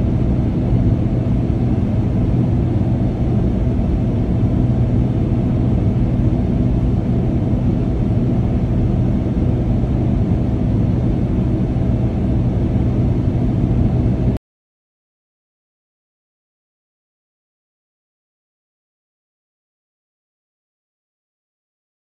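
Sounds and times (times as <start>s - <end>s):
airliner cabin rumble: 0.0s - 14.4s
constant low hum: 0.0s - 14.4s.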